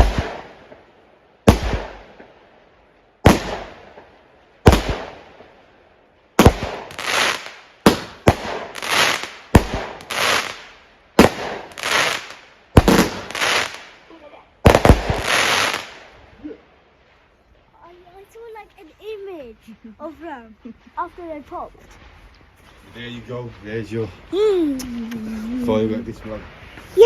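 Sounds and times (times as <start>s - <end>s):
fireworks bangs: 0.0s - 2.4s, 3.2s - 16.4s.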